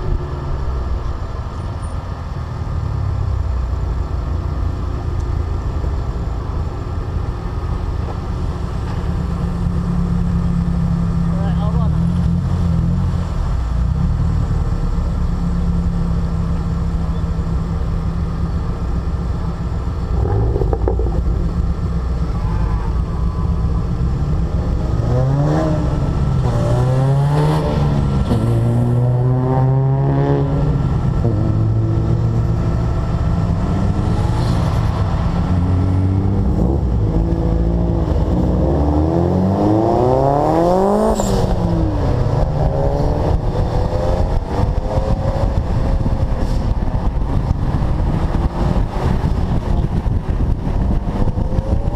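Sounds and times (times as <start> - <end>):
road and wind noise: 0.0 - 51.9
car engine revving: 19.4 - 46.3.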